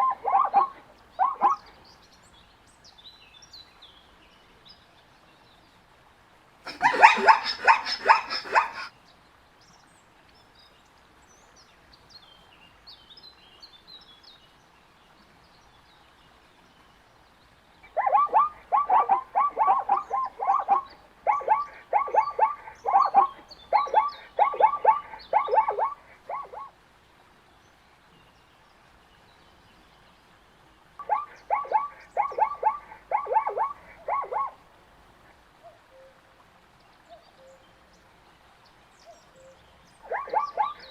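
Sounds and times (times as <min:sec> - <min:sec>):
zebra barking yelps: 0:00.0 - 0:01.7, 0:06.7 - 0:08.9, 0:17.8 - 0:26.7, 0:31.0 - 0:34.6, 0:40.0 - 0:40.9
faint bird chirps: 0:06.7 - 0:08.9, 0:17.8 - 0:26.7, 0:31.0 - 0:34.6, 0:39.1 - 0:40.9.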